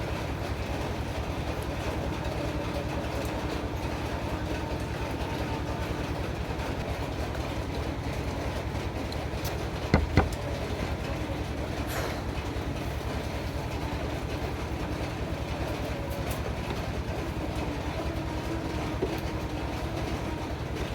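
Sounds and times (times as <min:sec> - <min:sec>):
fast rhythmic mechanical rumble: 0:00.0 - 0:20.9
sharp knocks: 0:10.0 - 0:10.4.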